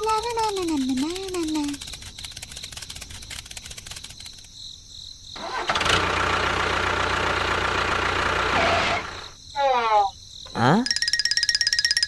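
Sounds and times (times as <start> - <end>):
small engine starting: 5.4 - 9.4.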